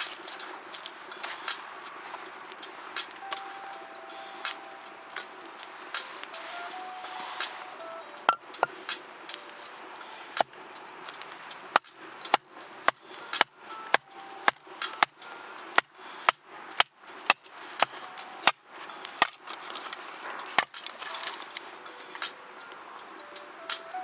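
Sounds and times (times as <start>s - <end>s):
firewood being chopped: 7.4s - 9.6s, 10.4s - 21.6s.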